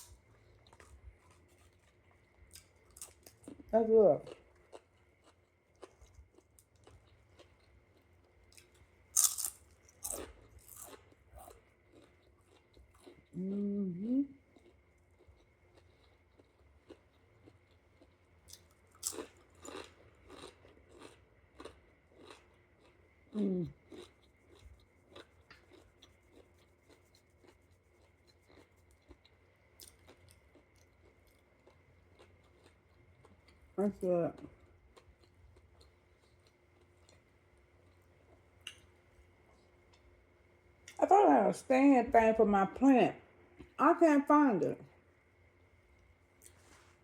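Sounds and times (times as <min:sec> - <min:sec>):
chewing crunchy snack: 0:00.0 - 0:13.6, 0:14.2 - 0:40.2
faint high hum: 0:00.0 - 0:47.0
person humming mm-hmm: 0:13.4 - 0:14.4, 0:23.4 - 0:23.8.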